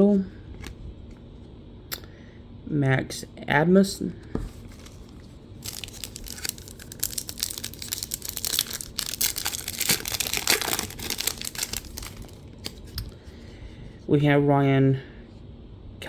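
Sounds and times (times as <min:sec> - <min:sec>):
trading cards rustling: 0:04.3 - 0:13.2.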